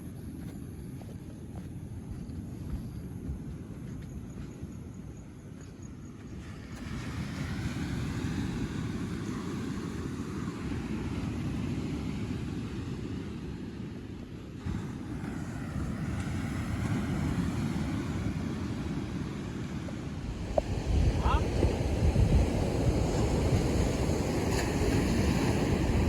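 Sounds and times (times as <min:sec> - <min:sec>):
wind rumbling on microphone: 0:00.0 - 0:26.0
ocean surf hiss: 0:06.4 - 0:26.0.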